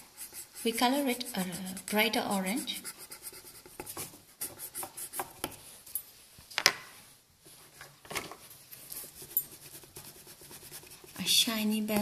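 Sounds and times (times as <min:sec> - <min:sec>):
colouring strokes scratching on paper: 0:00.0 - 0:05.7, 0:08.7 - 0:12.0.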